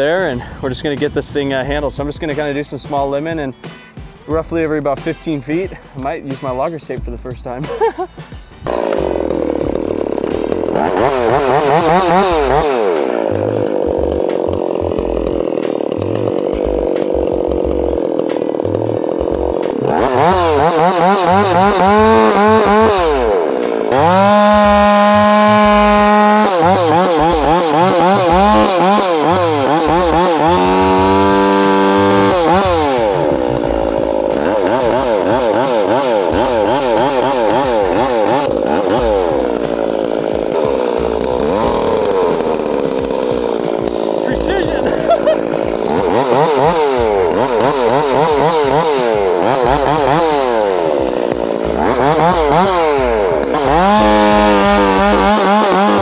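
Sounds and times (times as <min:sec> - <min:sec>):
chainsaw revving: 0:00.0 - 0:56.0.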